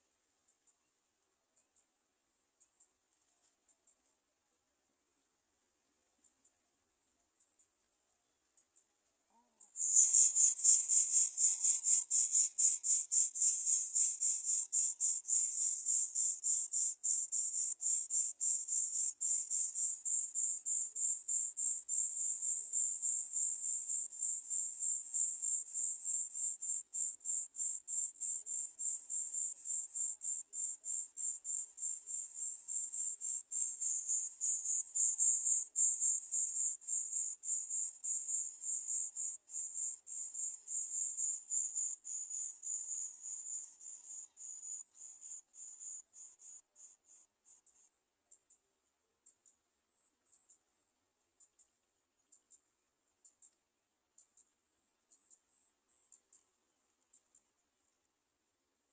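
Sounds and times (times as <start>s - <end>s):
high-pitched insect chirping: 9.8s - 47.9s.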